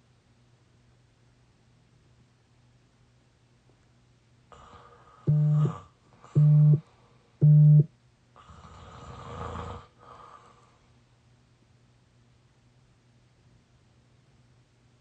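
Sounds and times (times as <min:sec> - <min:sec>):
sleeping person breathing noisily: 0:08.4 - 0:10.9.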